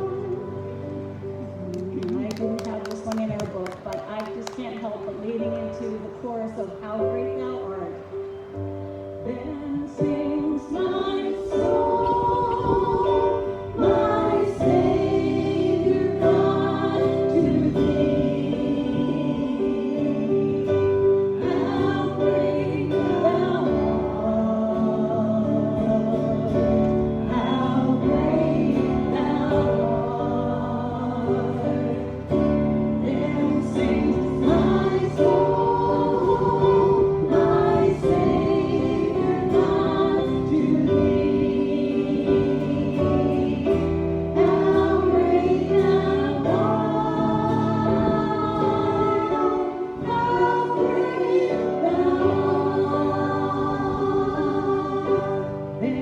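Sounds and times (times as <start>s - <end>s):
group singing a hymn: 0.0s - 3.3s, 8.9s - 56.0s.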